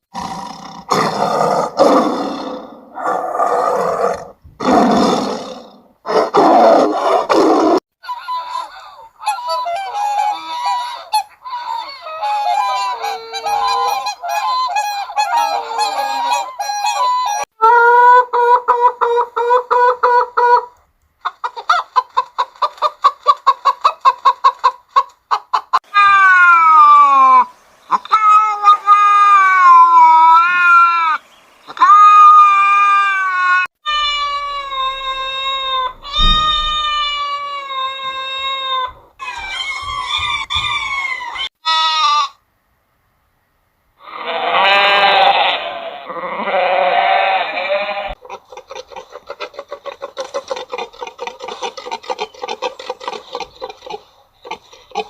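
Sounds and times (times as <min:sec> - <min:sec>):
geese honking: 0:08.1 - 0:18.2
rough noisy animal calls: 0:25.8 - 0:42.4, 0:44.0 - 0:55.0.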